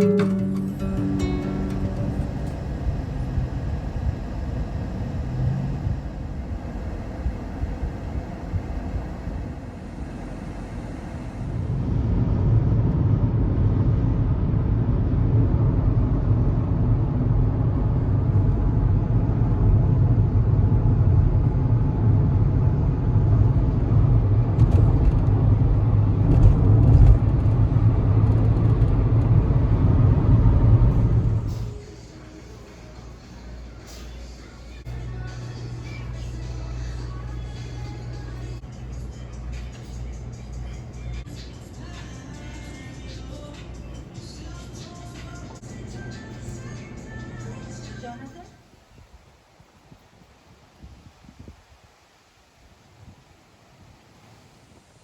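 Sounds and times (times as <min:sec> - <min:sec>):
car road and wind noise: 0:00.7 - 0:31.9, 0:48.7 - 0:55.0.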